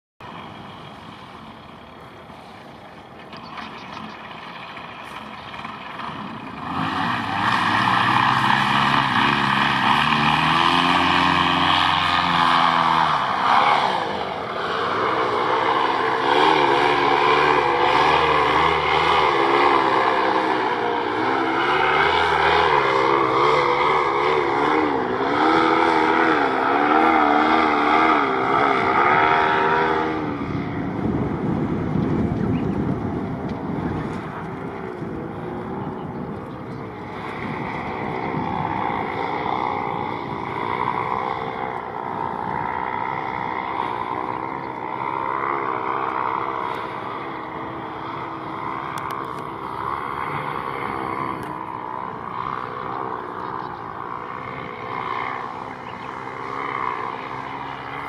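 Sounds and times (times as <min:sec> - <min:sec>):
small engine running: 0:00.2 - 0:58.0
strong wind noise: 0:12.8 - 0:45.5.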